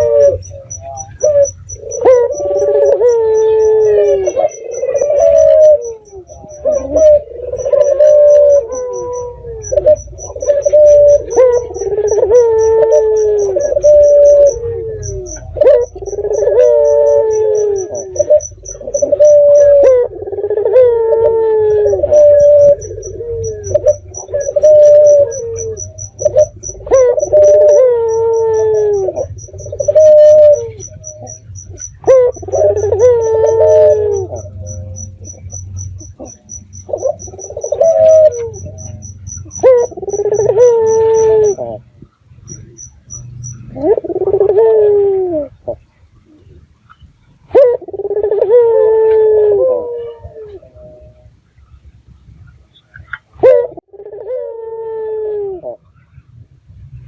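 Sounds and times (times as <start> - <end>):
insects chirping: 0.0 - 44.4
dove cooing: 0.0 - 46.6, 47.5 - 51.3, 53.0 - 55.9.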